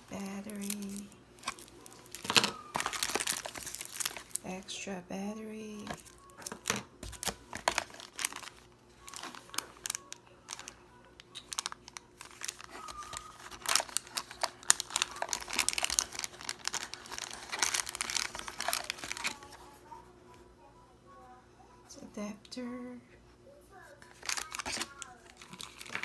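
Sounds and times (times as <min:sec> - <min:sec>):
packaging crinkling and rustling: 0:00.0 - 0:04.5, 0:05.7 - 0:19.9, 0:23.9 - 0:26.0.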